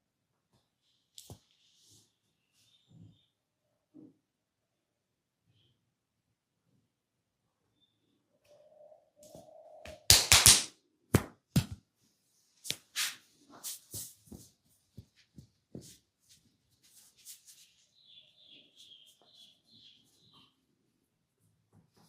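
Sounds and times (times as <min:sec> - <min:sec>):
hand slaps on head: 0:09.9 - 0:11.8.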